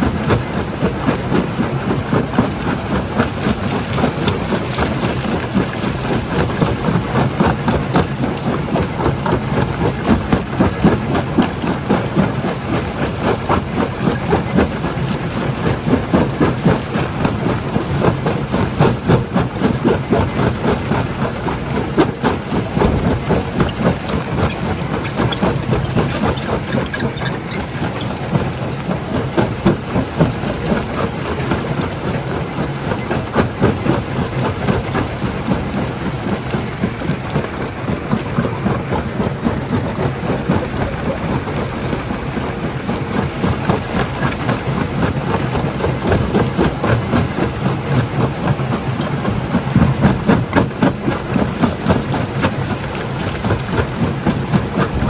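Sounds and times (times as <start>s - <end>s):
stone crusher drone: 53.1s - 55.0s.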